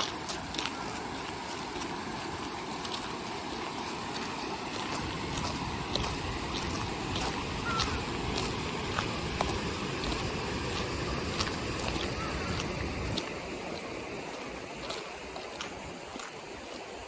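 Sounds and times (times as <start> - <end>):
river water rushing: 0.0 - 17.0
wind rumbling on microphone: 4.8 - 15.0.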